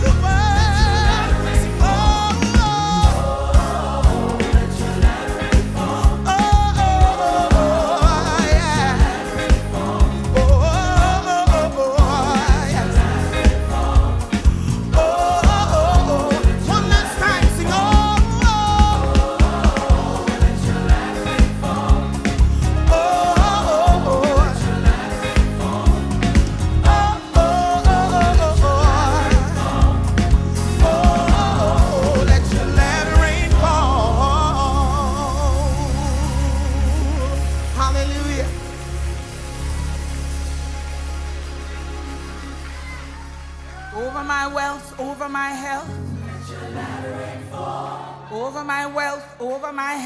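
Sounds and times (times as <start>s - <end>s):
person singing with vibrato: 0.0s - 39.0s
bass and drum beat: 0.0s - 43.9s
gospel band playing: 0.0s - 50.0s.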